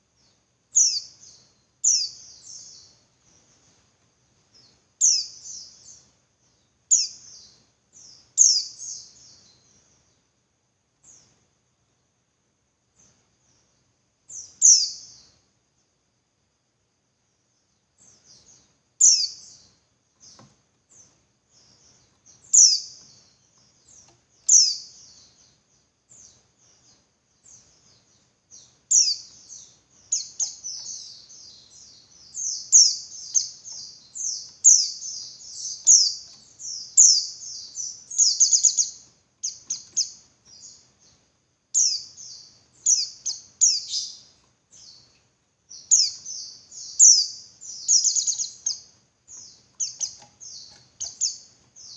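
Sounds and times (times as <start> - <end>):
bird chirping high and sharp: 49.6 - 51.9.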